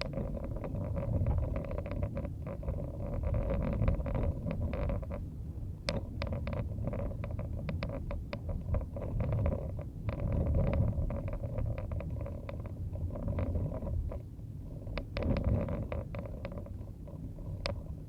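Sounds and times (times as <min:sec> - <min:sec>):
car cabin road and wind rumble: 0:00.0 - 0:18.0
sharp ticks and clicks: 0:05.8 - 0:14.2.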